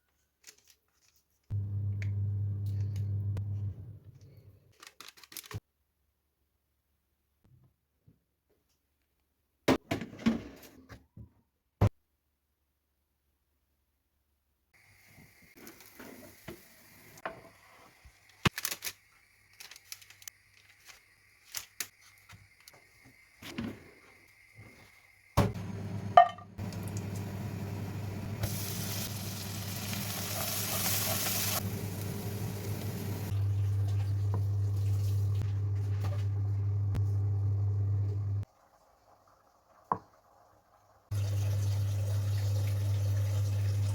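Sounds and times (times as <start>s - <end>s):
air fryer humming: 1.6s - 4.0s, 25.3s - 38.4s, 41.1s - 43.9s.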